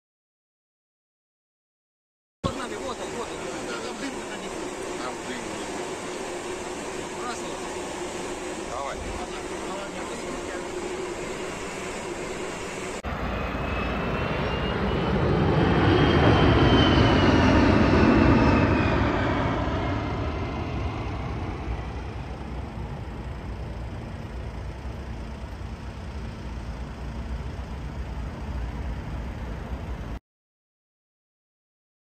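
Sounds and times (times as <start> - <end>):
jet engines whining: 2.4 - 30.2.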